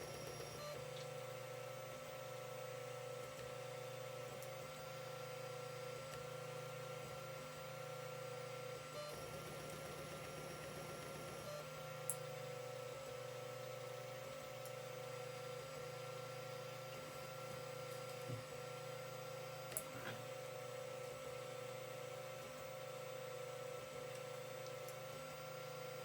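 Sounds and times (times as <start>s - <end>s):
stepper motor whine: 0.0s - 2.4s, 4.0s - 19.5s.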